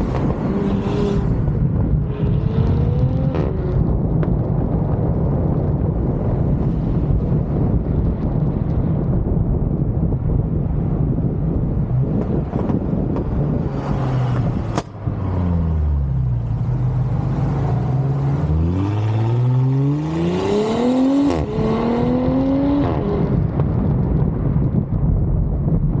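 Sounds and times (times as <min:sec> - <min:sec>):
wind noise: 0:00.0 - 0:26.0
car engine accelerating: 0:12.0 - 0:23.6.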